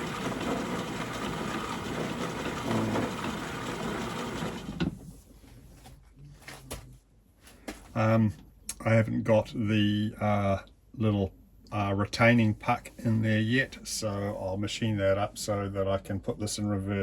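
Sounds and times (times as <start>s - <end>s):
metal lathe running: 0.0s - 4.9s.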